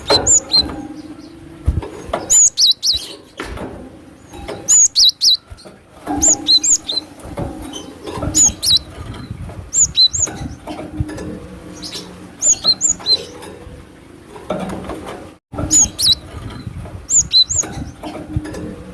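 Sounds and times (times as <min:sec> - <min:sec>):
bird calling in sharp high notes: 0:00.0 - 0:01.4, 0:02.3 - 0:03.2, 0:04.7 - 0:05.5, 0:06.2 - 0:07.1, 0:08.4 - 0:08.9, 0:11.8 - 0:13.3, 0:15.7 - 0:16.2.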